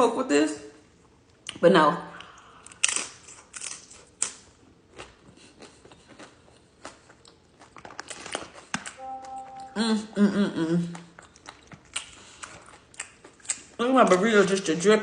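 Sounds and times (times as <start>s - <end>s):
chewing and biting food: 2.6s - 9.0s, 10.8s - 14.8s.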